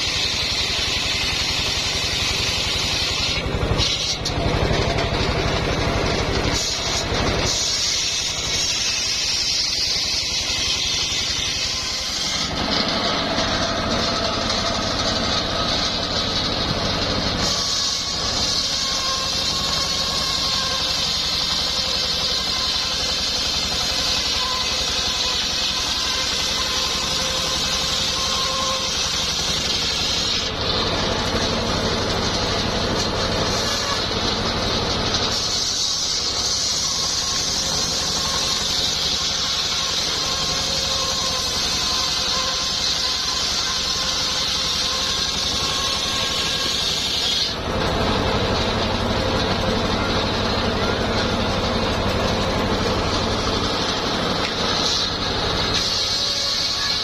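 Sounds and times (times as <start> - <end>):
saw blade hissing through wood: 0.0 - 4.5, 5.5 - 48.1, 48.8 - 57.0
engine hum: 0.0 - 7.6, 10.2 - 23.9, 47.0 - 56.0.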